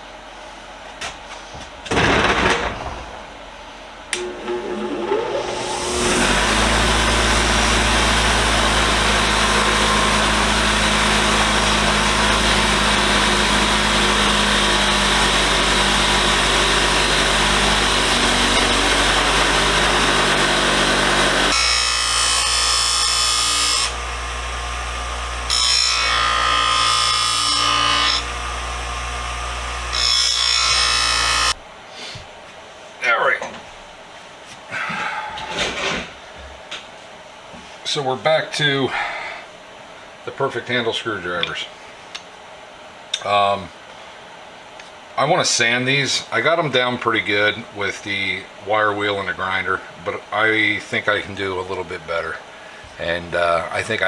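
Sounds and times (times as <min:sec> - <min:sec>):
motor humming: 0:04.1 - 0:31.6
wire wheel scrubbing metal: 0:04.2 - 0:22.6.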